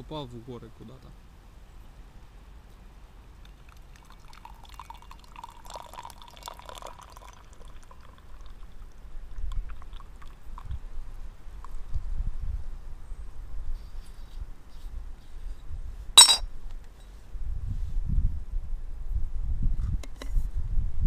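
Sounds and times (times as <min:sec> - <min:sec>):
water pouring into cups: 0:03.5 - 0:10.8.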